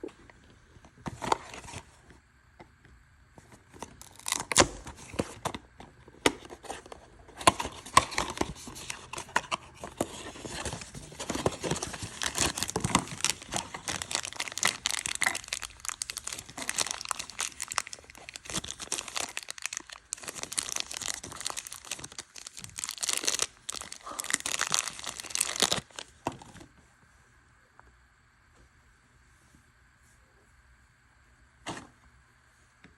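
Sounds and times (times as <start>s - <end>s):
packaging crinkling and rustling: 3.4s - 26.7s
packaging tearing: 4.0s - 5.2s, 7.7s - 26.1s.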